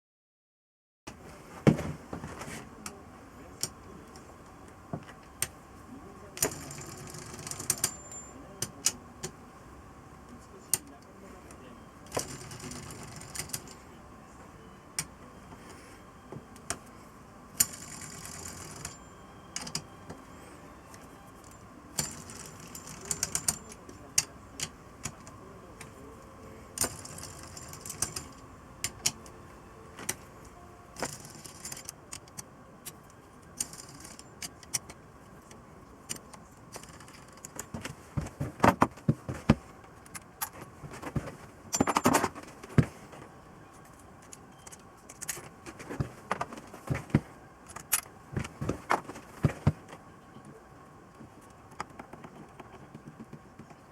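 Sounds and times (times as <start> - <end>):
faint hum: 1.1 - 53.9.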